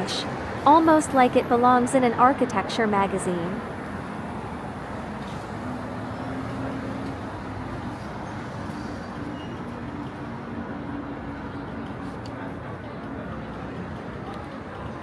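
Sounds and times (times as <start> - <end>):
passing vehicles: 0.0 - 15.0.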